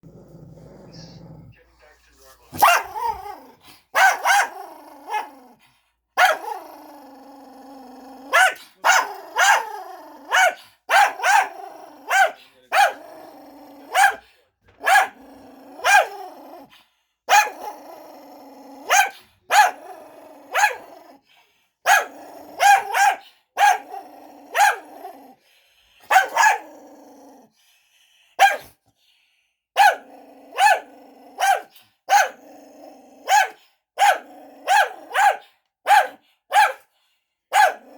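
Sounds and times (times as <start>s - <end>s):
dog growling: 0.0s - 16.8s, 17.4s - 21.3s, 21.9s - 25.6s, 26.2s - 27.6s, 30.0s - 31.7s, 32.3s - 33.6s, 34.2s - 35.2s
dog barking: 2.6s - 3.2s, 3.9s - 5.3s, 6.2s - 6.5s, 8.3s - 9.7s, 10.3s - 13.0s, 13.8s - 14.2s, 14.8s - 15.2s, 15.8s - 16.1s, 17.3s - 17.6s, 18.9s - 19.8s, 20.5s - 20.9s, 21.8s - 23.9s, 24.5s - 24.9s, 26.0s - 26.7s, 28.4s - 28.8s, 29.8s - 32.4s, 33.2s - 36.9s, 37.5s - 37.9s.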